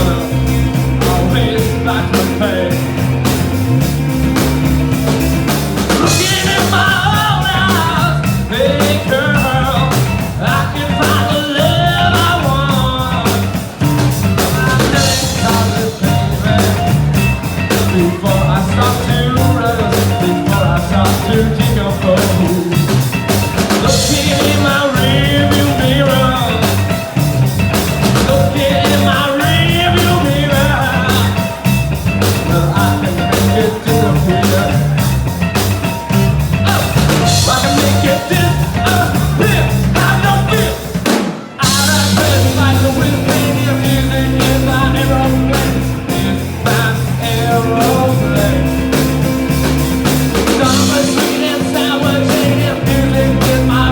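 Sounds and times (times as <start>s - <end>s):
person singing: 0.0s - 3.3s, 5.8s - 27.2s, 27.8s - 53.9s
live rock band playing: 0.0s - 53.9s.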